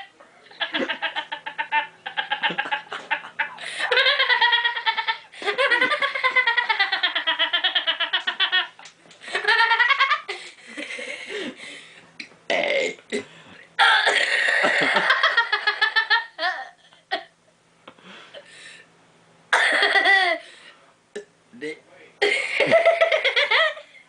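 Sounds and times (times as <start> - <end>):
person giggling: 0.5 - 11.6, 13.8 - 17.3, 22.2 - 24.0.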